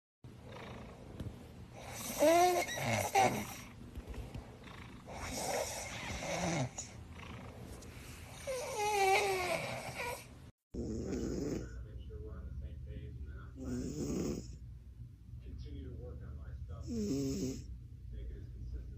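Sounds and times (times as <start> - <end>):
cat snoring with whistling: 0.4 - 1.0, 1.7 - 3.7, 4.6 - 11.8, 13.6 - 14.6, 16.8 - 17.7.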